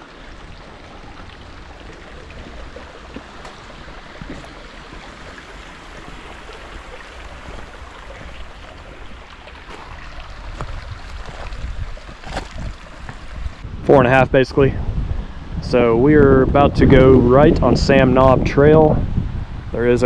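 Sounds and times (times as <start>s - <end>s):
creek water running: 0.0s - 14.7s
wind rumble on microphone: 0.0s - 20.0s.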